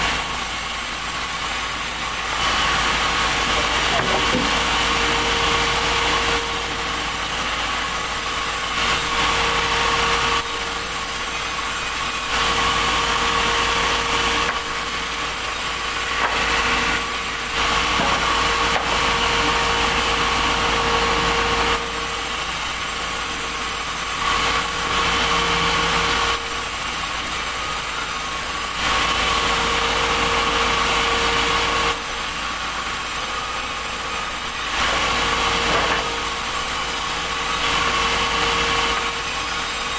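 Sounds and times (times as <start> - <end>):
sawmill saw drone: 0.0 - 39.9.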